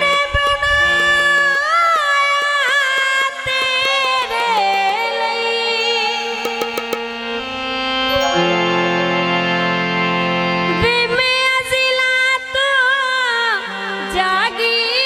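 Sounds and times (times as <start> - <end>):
drum strokes: 5.8 - 7.1
ornamented melody with pitch bends: 8.1 - 10.4.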